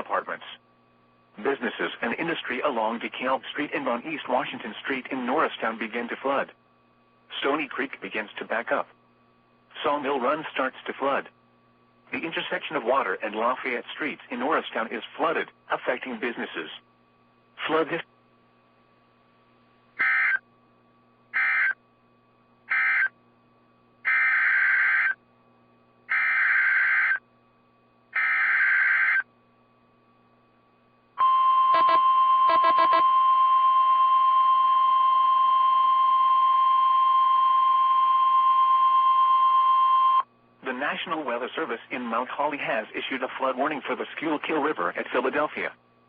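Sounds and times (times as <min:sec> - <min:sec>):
steady radio alert tone: 0:31.2 - 0:36.2
screeching digital data bursts: 0:31.7 - 0:33.0.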